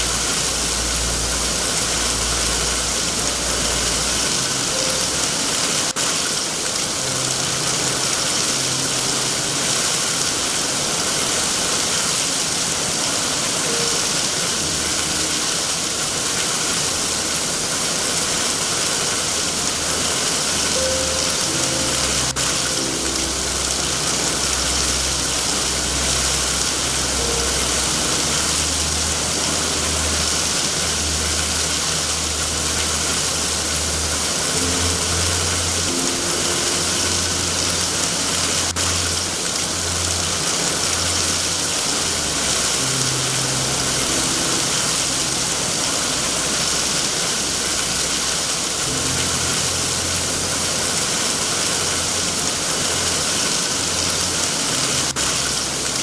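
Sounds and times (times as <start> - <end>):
low rumble: 0.0 - 5.4, 19.5 - 48.3
heavy rain: 0.0 - 56.0.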